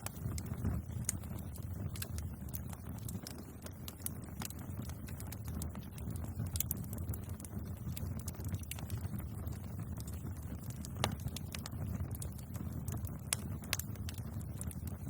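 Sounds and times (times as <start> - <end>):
steady low rumble: 0.0 - 10.5
bonfire crackling: 0.0 - 15.0
fire pops and snaps: 0.0 - 15.0.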